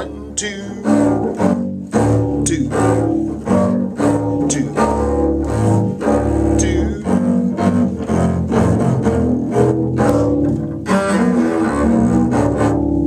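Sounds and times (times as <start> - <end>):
man counting beats: 0.0 - 1.6, 2.2 - 3.4, 4.0 - 7.7
low strings repeated notes: 0.0 - 13.0
string orchestra playing: 0.0 - 13.0.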